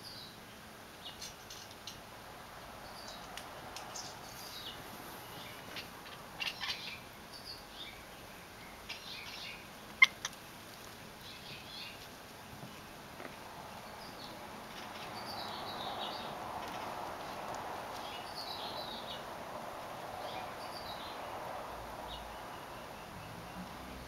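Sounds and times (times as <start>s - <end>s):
birds chirping: 2.8s - 24.0s
cats chattering: 5.5s - 7.0s, 8.8s - 10.4s.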